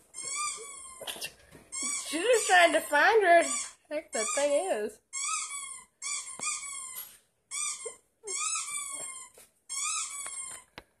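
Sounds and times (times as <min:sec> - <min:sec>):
squeaky dog toy squeaks: 0:00.0 - 0:10.8.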